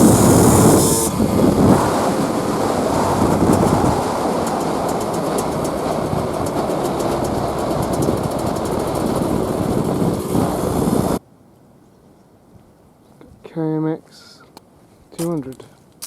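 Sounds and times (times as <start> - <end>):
fast rattle of ticks: 0.0 - 10.6
dirt bike engine running: 0.0 - 11.2
wind and road noise: 0.0 - 11.2.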